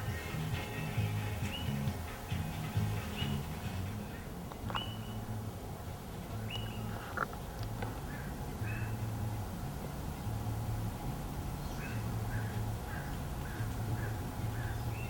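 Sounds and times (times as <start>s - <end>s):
low steady hum: 0.0s - 15.0s
short high bird chirps: 4.8s - 5.2s.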